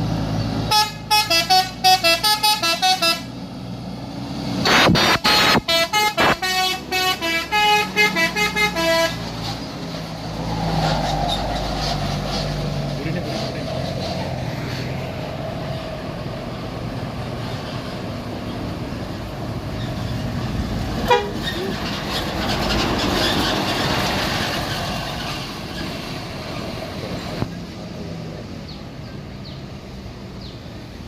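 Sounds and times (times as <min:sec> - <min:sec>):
bus passing close by: 0:00.0 - 0:31.0
bus horn toot: 0:00.7 - 0:03.4, 0:04.6 - 0:09.4, 0:21.0 - 0:21.8.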